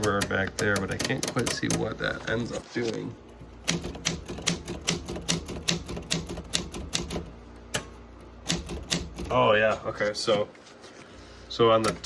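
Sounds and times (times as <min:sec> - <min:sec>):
typewriter keys clacking: 0:03.7 - 0:07.3.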